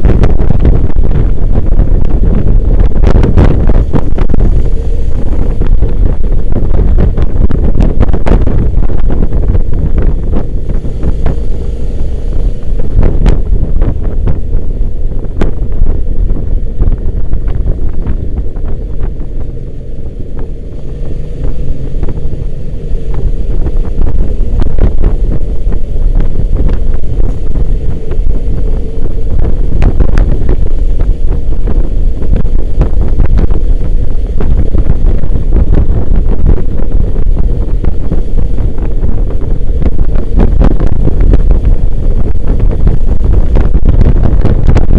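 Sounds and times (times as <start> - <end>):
wind buffeting microphone: 0.0 - 44.9.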